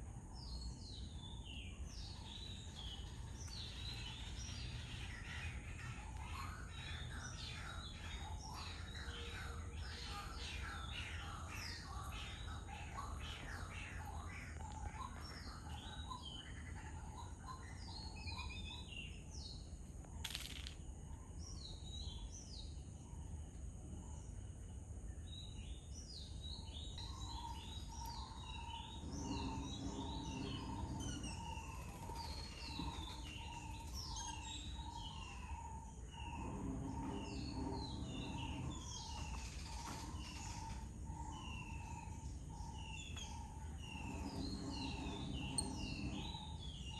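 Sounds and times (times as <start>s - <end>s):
small birds chirping: 0.0s - 46.9s
low background rumble: 20.8s - 46.9s.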